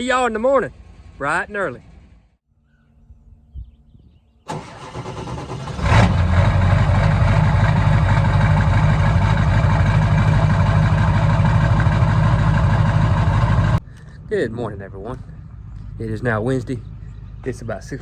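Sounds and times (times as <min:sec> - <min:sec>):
starter cranking: 0:04.5 - 0:06.4
truck engine revving and idling: 0:04.5 - 0:14.2.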